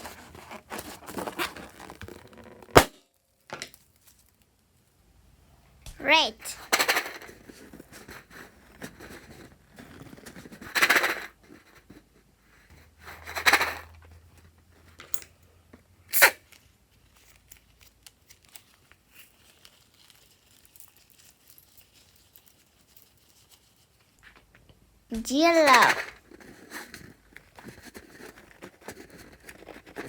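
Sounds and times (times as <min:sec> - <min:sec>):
faint small crackles: 0:00.2 - 0:04.9, 0:16.5 - 0:24.8.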